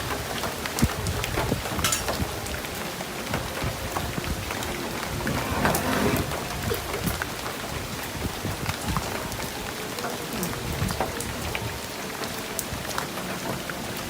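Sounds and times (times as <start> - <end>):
raindrops striking close by: 0.0 - 5.3, 6.3 - 14.0
rain falling: 0.0 - 14.0.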